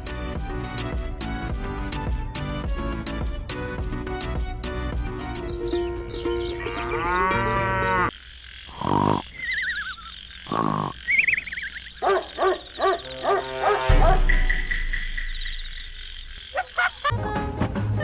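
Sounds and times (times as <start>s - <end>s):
short mooing calls: 6.6s - 8.1s.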